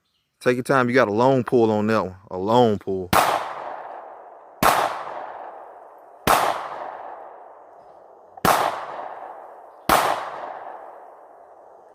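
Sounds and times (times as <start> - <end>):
handgun shots with echo: 3.1 - 7.7, 8.4 - 11.5.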